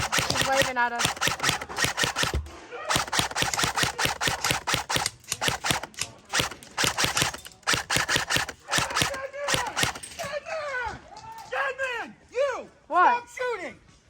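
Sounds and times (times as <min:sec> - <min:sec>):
airsoft guns firing bursts: 0:00.0 - 0:10.3.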